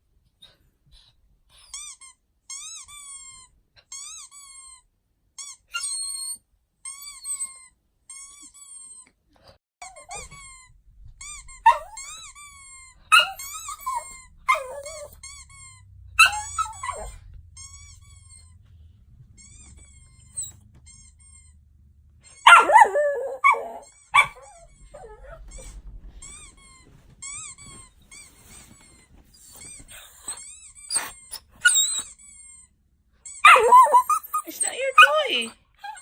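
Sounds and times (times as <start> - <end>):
squeaky toy squeaks: 1.5 - 9.1, 9.8 - 36.0
dog crying: 9.8 - 28.7, 29.3 - 32.2, 33.3 - 36.0
rustling of movement: 9.8 - 30.8.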